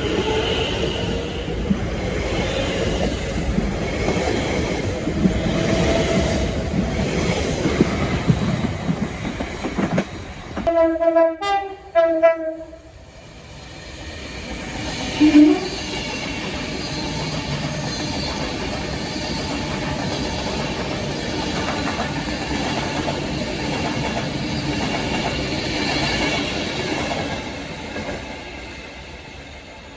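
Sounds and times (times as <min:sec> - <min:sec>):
train wheel and rail noise: 0:00.0 - 0:29.9
train horn: 0:10.7 - 0:12.9, 0:15.1 - 0:16.3.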